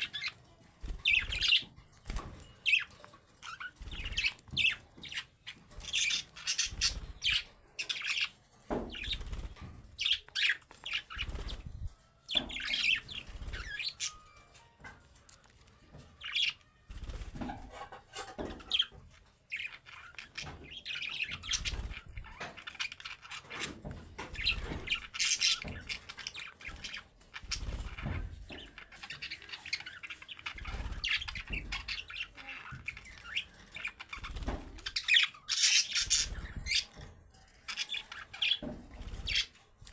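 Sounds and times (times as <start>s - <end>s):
budgerigars chirping: 0.0s - 11.7s, 12.3s - 14.4s, 16.2s - 18.0s, 18.6s - 37.0s, 37.7s - 39.5s
wing flutters: 8.9s - 12.0s.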